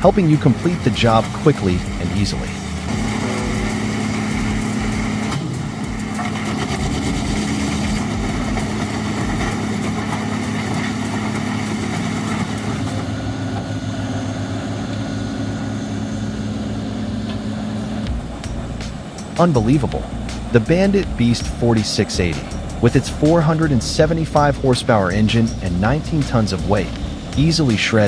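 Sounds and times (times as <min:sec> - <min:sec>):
high hiss: 0:00.0 - 0:13.1
large diesel engine humming: 0:00.0 - 0:28.0.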